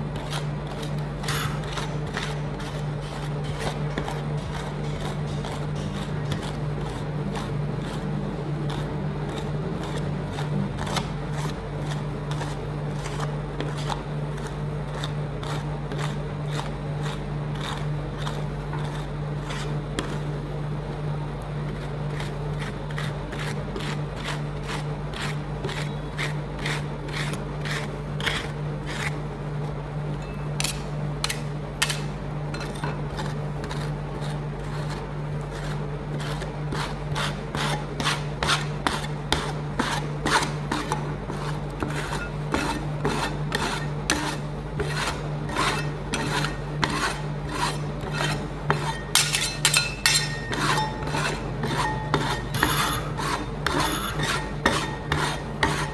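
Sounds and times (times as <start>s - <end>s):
steady low hum: 0.0s - 55.9s
metal spatulas tapping and scraping: 0.2s - 8.0s, 30.2s - 35.0s, 35.6s - 55.9s.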